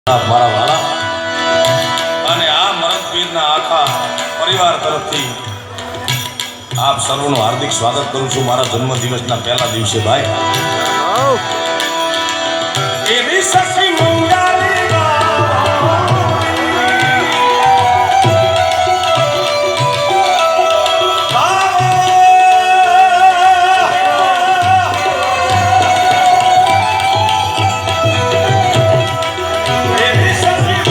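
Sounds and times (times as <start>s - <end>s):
tabla beat: 0.0s - 30.9s
wavering gliding melody: 14.4s - 22.7s.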